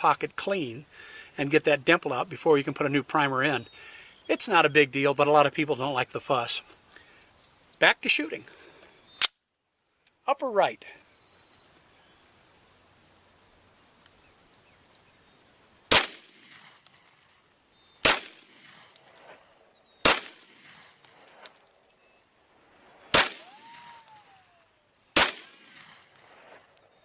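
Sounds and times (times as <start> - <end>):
pistol shots: 15.9 - 16.8, 18.0 - 19.0, 20.0 - 21.0, 23.1 - 24.2, 25.2 - 26.4.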